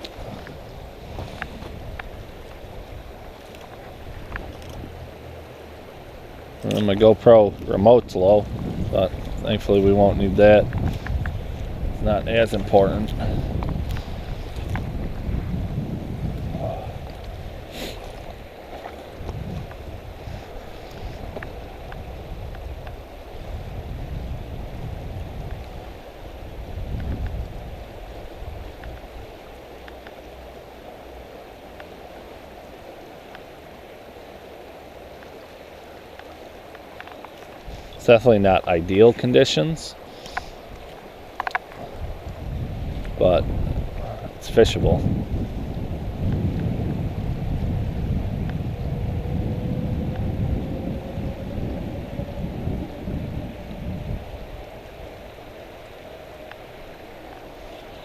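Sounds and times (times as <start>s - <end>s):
stream water flowing: 0.0s - 58.0s
wind rumbling on microphone: 0.0s - 58.0s
faint ticks: 26.9s - 27.6s, 28.2s - 29.1s, 29.8s - 30.2s, 40.1s - 42.4s.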